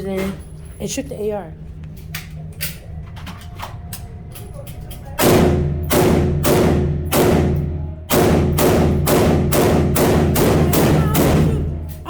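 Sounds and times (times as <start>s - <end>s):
rifle shots ringing indoors: 4.8s - 12.0s.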